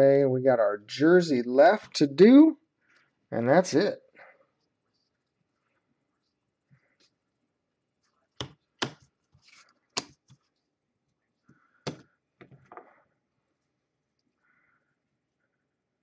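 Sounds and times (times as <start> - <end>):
objects knocking on tabletop: 11.9 - 13.0.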